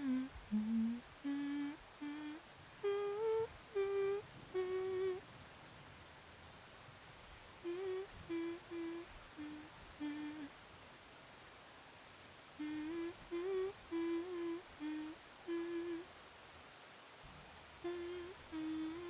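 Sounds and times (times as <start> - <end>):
person humming a lullaby: 0.0 - 5.2, 7.6 - 10.5, 12.6 - 16.1, 17.8 - 19.0.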